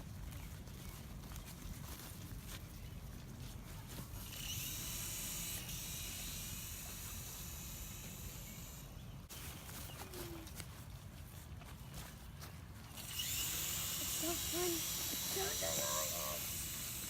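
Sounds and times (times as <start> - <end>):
toy aircraft motors whining: 4.2 - 9.0, 12.9 - 17.0.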